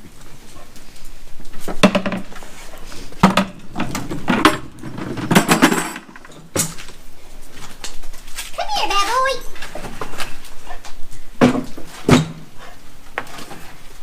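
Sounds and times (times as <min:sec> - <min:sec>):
metal buckets clanking: 0:03.0 - 0:06.8.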